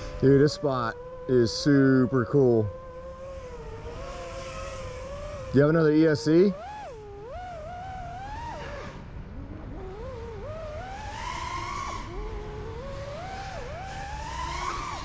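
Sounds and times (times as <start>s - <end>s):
drone motors whining: 0.0s - 15.0s.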